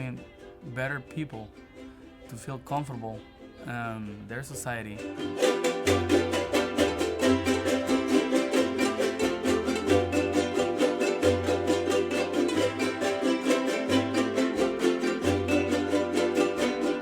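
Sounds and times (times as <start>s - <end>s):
jarana strummed in quick rhythm: 4.5s - 17.0s.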